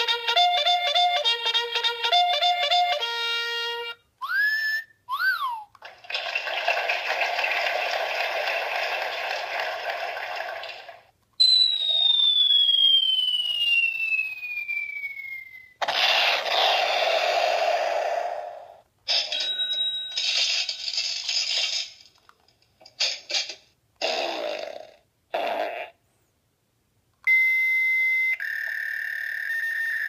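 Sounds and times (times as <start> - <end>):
whistle falling in pitch: 4.2 - 5.7, 11.4 - 15.8, 27.3 - 30.0.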